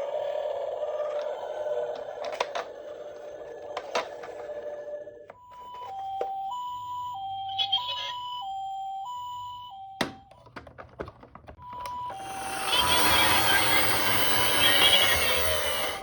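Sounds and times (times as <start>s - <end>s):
two-tone ambulance siren: 0.0s - 10.5s, 11.6s - 16.0s
loud rushing noise: 12.2s - 16.0s.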